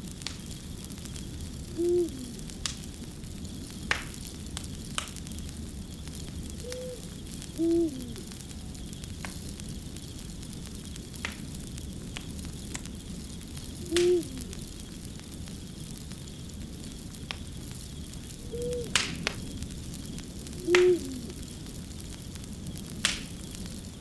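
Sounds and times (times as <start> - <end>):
fire crackling and popping: 0.0 - 24.0
owl hooting: 1.7 - 2.6, 6.6 - 8.4, 13.8 - 14.6, 18.4 - 19.0, 20.6 - 21.4.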